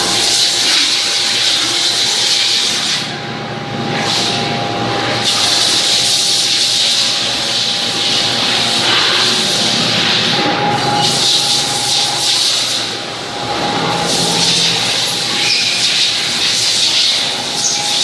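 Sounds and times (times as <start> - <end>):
faint machine whine: 0.0 - 18.0
machine loud steady hiss: 5.2 - 18.0.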